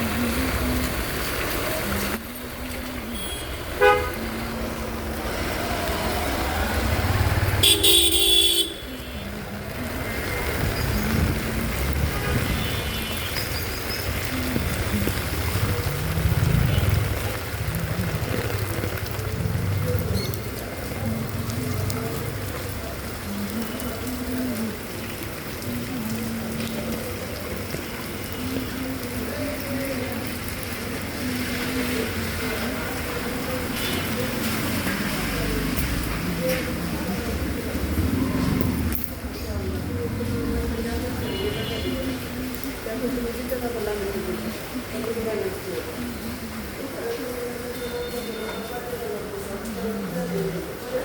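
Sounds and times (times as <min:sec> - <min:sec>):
road traffic: 0:00.0 - 0:51.0
steady rain hiss: 0:00.0 - 0:51.0
vehicle horns honking: 0:03.1 - 0:04.2, 0:07.5 - 0:09.2, 0:12.1 - 0:13.4.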